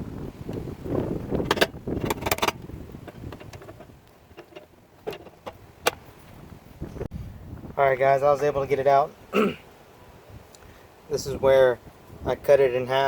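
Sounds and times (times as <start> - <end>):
metal tool clicking and scraping: 1.5 - 6.0.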